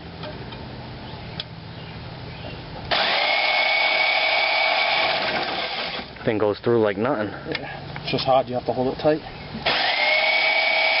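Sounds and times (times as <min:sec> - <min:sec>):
bandsaw cutting steel: 0:02.9 - 0:06.1, 0:09.6 - 0:11.0.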